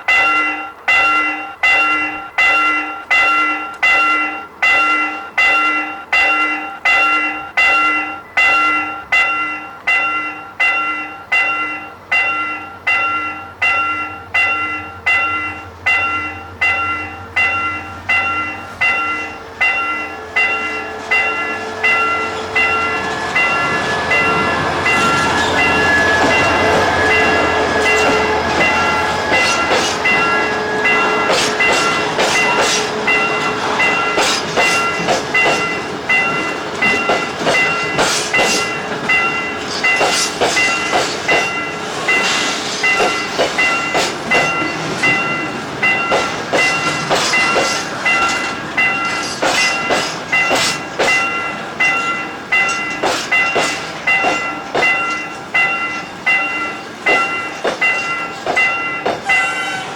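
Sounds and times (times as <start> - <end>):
electronic crossing alarm bell: 0.0 - 59.9
train wheels knocking on rail joints: 17.4 - 59.7.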